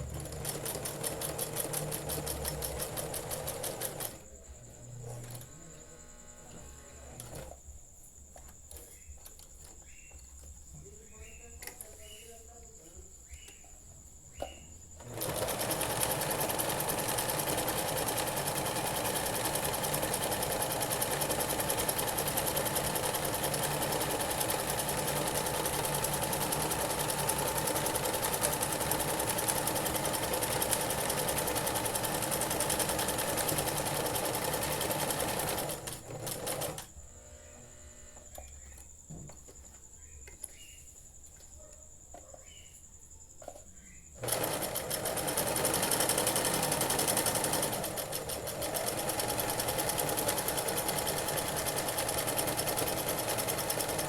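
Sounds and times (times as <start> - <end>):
electric sewing machine stitching: 0.0 - 7.6, 15.0 - 38.4, 44.2 - 54.0.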